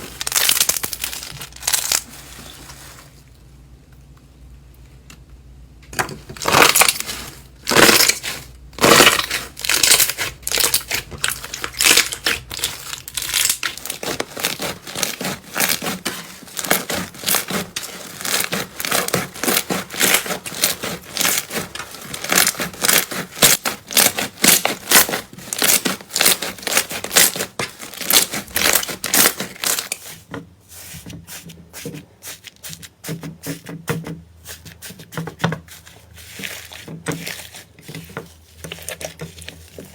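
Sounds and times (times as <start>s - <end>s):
slime crackling and popping: 0.0s - 2.1s, 6.4s - 30.1s.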